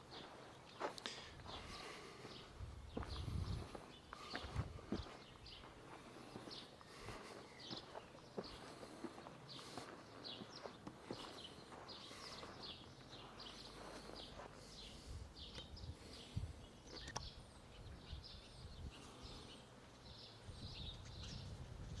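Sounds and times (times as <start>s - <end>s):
small birds chirping: 0.0s - 22.0s
sharp click: 17.0s - 17.3s.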